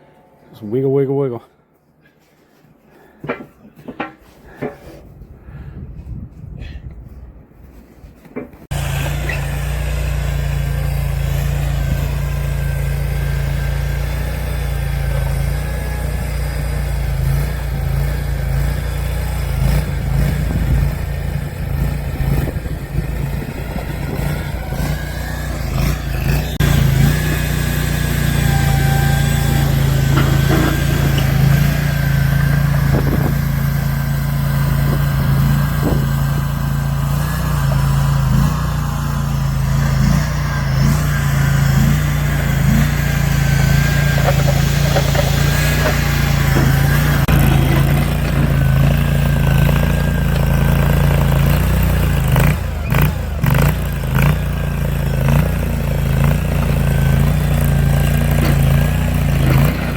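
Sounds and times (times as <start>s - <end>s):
small engine running: 8.7s - 59.9s.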